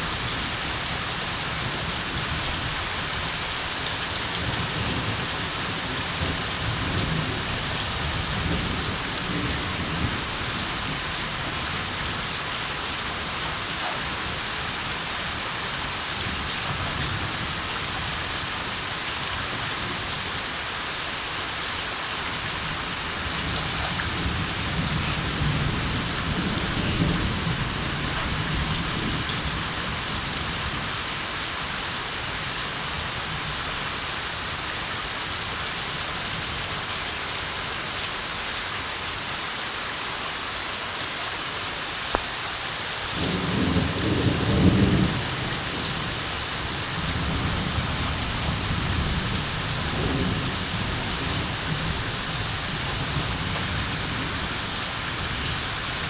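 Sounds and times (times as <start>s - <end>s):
steady rain falling: 0.0s - 56.0s
distant thunder rumbling: 43.1s - 56.0s.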